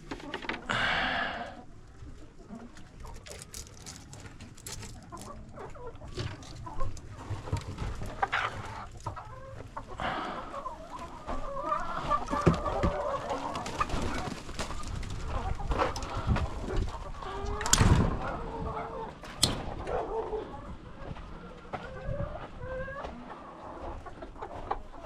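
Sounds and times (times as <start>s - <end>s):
hens clucking: 0.0s - 25.0s.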